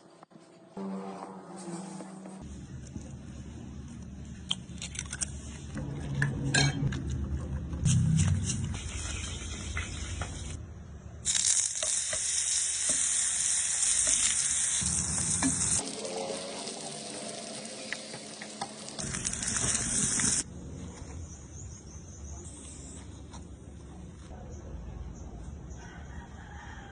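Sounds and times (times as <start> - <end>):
sausages sizzling in hot oil: 11.2 - 20.4.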